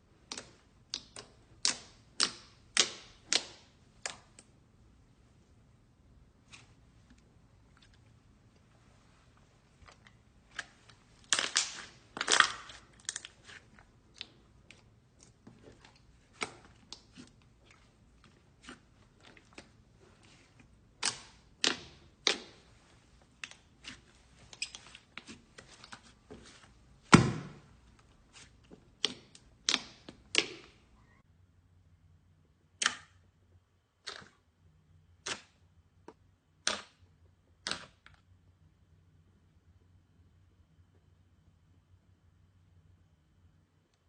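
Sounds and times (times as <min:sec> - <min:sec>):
slime squishing with sticky pops: 0:00.2 - 0:04.5, 0:09.8 - 0:30.8, 0:34.0 - 0:34.4, 0:36.6 - 0:37.0, 0:37.6 - 0:38.2.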